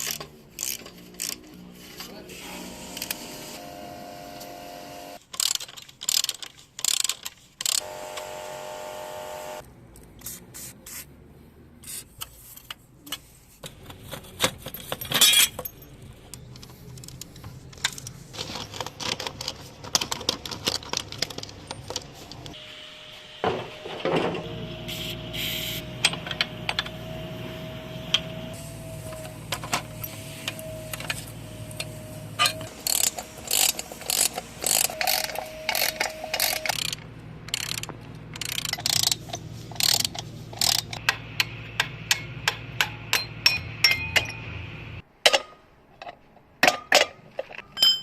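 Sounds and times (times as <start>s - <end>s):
steady machine hum: 7.8s - 9.6s
hand tools clicking on metal: 31.8s - 44.4s.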